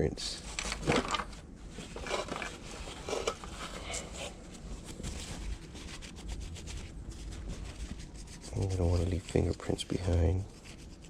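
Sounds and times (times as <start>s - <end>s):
plastic parts rubbing and clicking: 0.5s - 3.8s.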